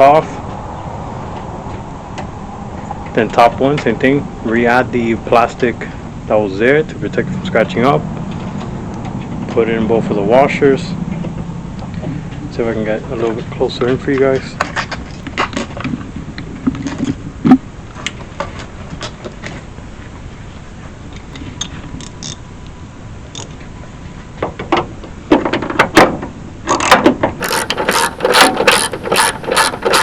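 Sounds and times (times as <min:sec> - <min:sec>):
hand ratchet clicking: 0:27.4 - 0:30.0.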